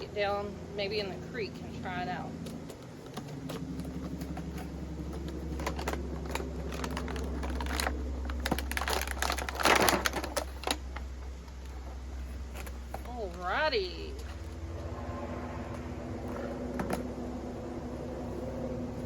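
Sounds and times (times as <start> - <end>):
steady low hum: 0.0 - 19.0
packaging crinkling and clicking: 2.4 - 13.1
plastic rustle: 2.5 - 13.1.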